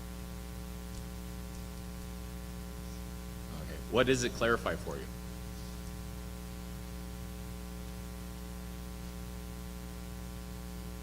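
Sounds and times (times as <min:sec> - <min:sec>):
electrical mains hum: 0:00.0 - 0:11.0
background hiss: 0:01.0 - 0:08.3.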